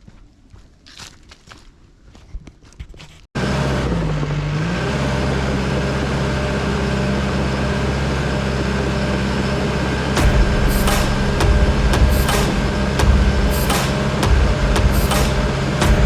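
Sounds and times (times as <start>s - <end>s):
diesel engine running: 3.4s - 16.0s.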